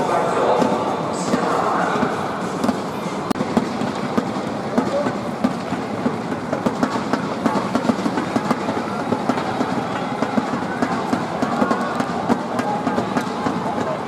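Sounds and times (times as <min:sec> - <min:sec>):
crowd clapping: 0:04.8 - 0:14.0.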